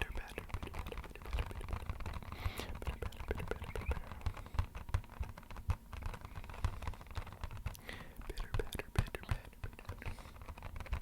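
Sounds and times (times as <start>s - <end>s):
fingertips tapping on empty box: 0.0s - 11.0s.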